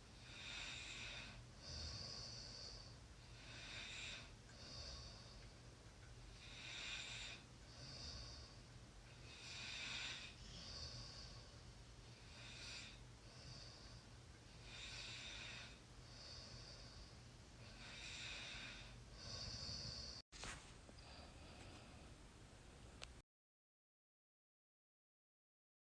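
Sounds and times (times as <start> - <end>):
person snoring: 0.2 - 5.4, 6.4 - 8.6, 9.2 - 11.6, 12.2 - 14.0, 14.6 - 20.2.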